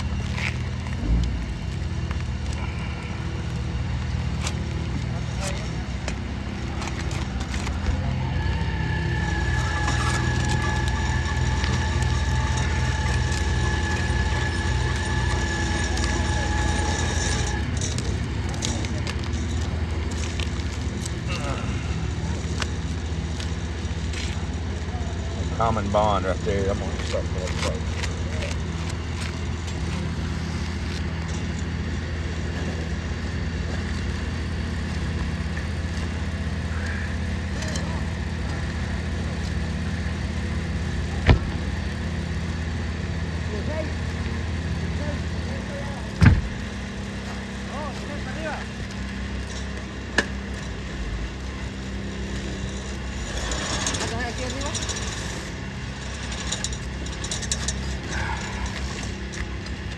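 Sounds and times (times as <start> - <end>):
high whine: 0.0 - 59.9
motor humming: 0.0 - 59.9.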